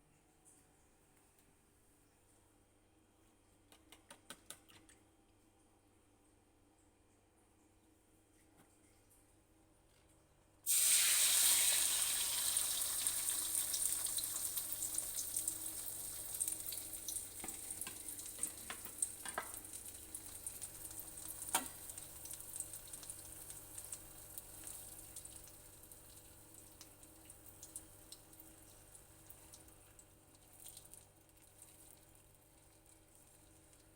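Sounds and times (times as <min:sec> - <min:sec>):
egg sizzling in hot oil: 0:10.7 - 0:33.1.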